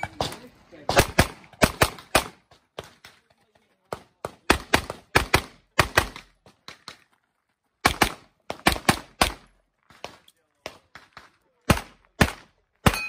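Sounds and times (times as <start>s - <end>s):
rapid pistol fire: 0.9s - 2.4s.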